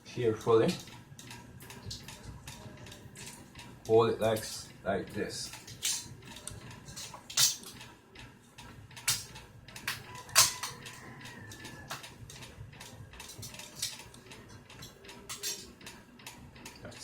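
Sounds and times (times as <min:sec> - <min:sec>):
small metal parts clinking: 0:13.2 - 0:14.1, 0:14.8 - 0:15.7.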